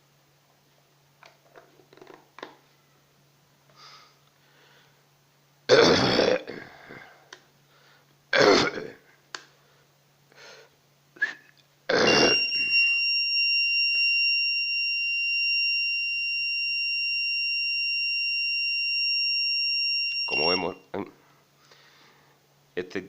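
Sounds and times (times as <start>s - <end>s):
high-pitched buzzer beep: 12.1s - 20.8s.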